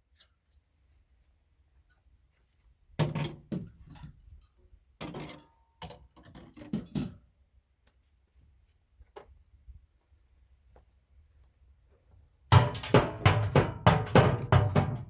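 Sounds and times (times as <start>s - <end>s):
refrigerator parts knocking and clattering: 12.5s - 15.0s.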